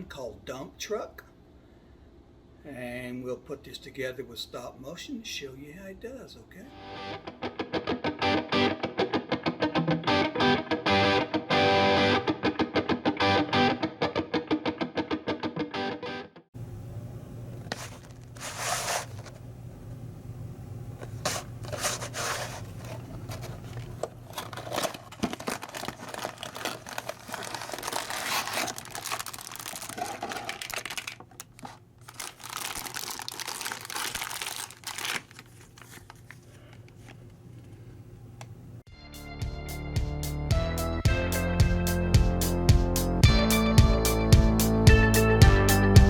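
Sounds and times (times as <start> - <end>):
plastic packaging crinkling and tearing: 21.7 - 36.7.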